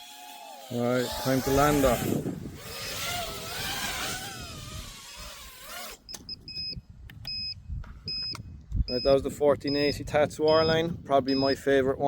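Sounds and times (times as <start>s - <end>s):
drone motors whining: 0.0s - 6.3s.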